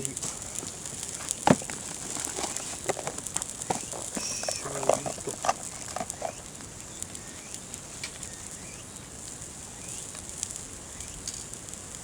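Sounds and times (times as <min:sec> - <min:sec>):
high-pitched insect buzz: 0:03.6 - 0:06.4
bird chirps: 0:03.6 - 0:09.0.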